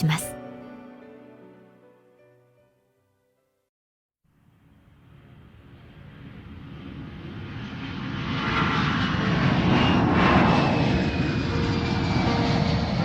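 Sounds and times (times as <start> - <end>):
airplane flying past: 4.6 - 13.0.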